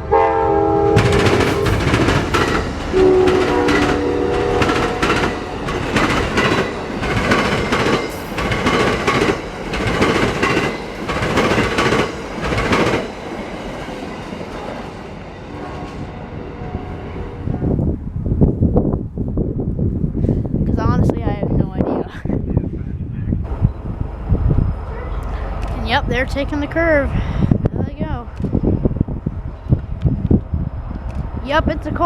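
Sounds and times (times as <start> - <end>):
diesel locomotive horn: 0.0 - 2.3, 2.9 - 6.5, 15.5 - 17.8
train wheels clacking on track: 0.9 - 16.4.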